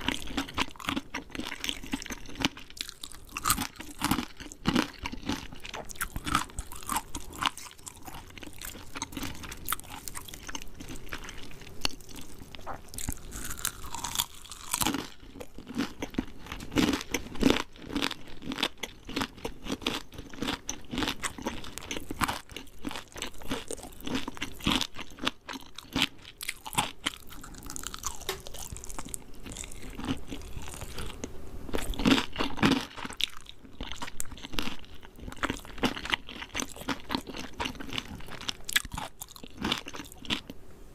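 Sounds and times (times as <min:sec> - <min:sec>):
crunching fried chicken: 0:00.0 - 0:40.5
person chewing: 0:00.0 - 0:40.5.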